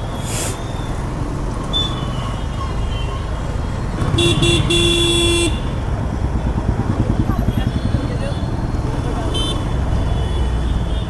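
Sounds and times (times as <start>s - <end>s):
engine and traffic rumble: 0.0s - 11.0s
vehicle horn honking: 4.1s - 5.8s.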